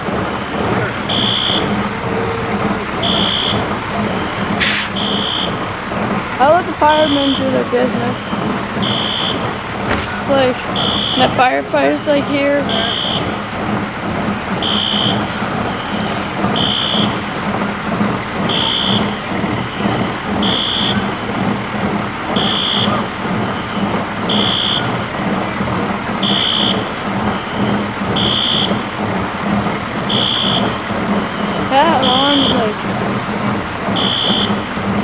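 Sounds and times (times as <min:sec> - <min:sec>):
rush of water: 0:00.0 - 0:35.0
fire alarm beeping: 0:00.3 - 0:04.4, 0:05.0 - 0:05.6, 0:06.9 - 0:09.4, 0:10.3 - 0:11.5, 0:12.6 - 0:13.4, 0:14.6 - 0:17.2, 0:18.5 - 0:21.1, 0:22.4 - 0:25.0, 0:26.2 - 0:28.8, 0:30.1 - 0:32.8, 0:34.0 - 0:34.6.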